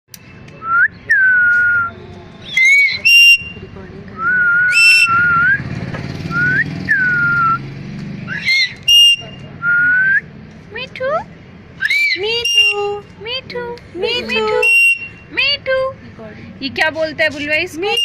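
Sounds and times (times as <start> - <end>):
parrot whistling: 0.6 - 3.6, 4.2 - 5.6, 8.3 - 10.2, 11.8 - 13.0, 14.6 - 15.2
parrot squawks: 2.4 - 3.5, 4.7 - 5.3, 8.3 - 9.3, 11.8 - 12.9.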